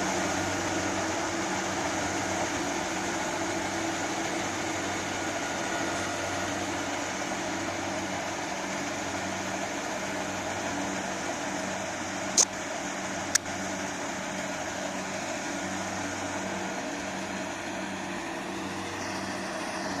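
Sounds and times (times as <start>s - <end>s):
harvester engine running: 0.0s - 20.0s
sharp clicks: 12.3s - 12.5s.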